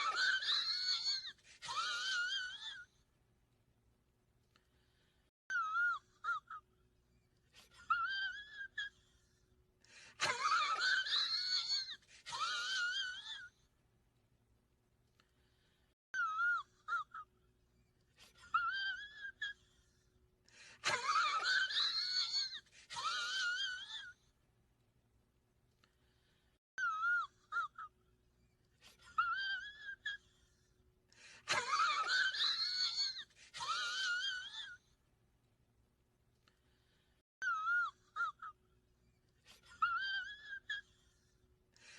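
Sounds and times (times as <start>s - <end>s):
person's high-pitched wheezy squeals: 0.0s - 2.9s, 7.6s - 9.3s, 10.2s - 13.5s, 18.2s - 19.9s, 20.8s - 24.2s, 26.8s - 28.0s, 28.8s - 30.6s, 31.5s - 34.8s, 37.4s - 38.6s, 39.5s - 41.3s.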